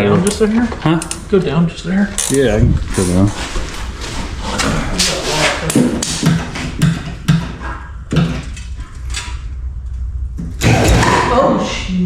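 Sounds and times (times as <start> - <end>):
hand tools knocking and scraping: 5.6 - 8.9.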